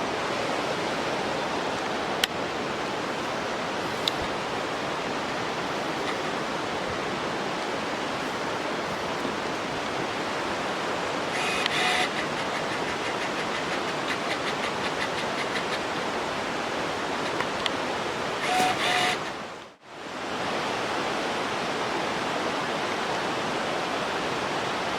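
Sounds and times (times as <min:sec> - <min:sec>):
rushing mountain stream: 0:00.0 - 0:24.9
short high-pitched call: 0:11.4 - 0:12.5, 0:18.4 - 0:19.3.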